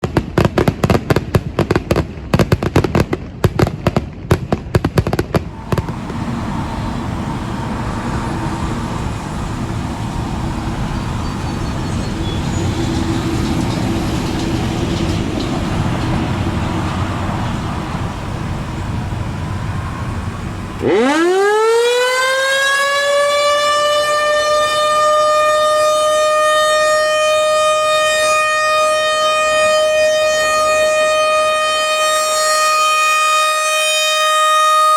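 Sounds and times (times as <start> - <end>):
background rumble: 3.1 - 20.9
outdoor warning siren wailing: 5.4 - 34.9.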